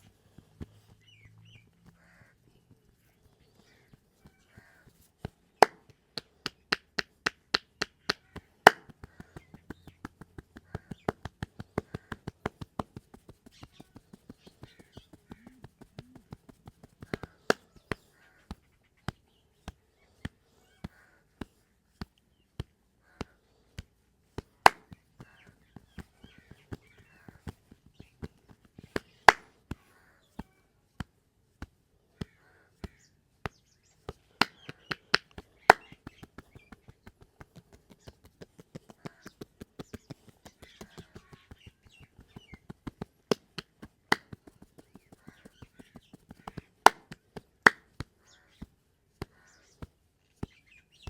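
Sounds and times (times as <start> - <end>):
hand strikes of a massage: 5.2 - 20.4, 21.4 - 26.5, 31.0 - 50.5.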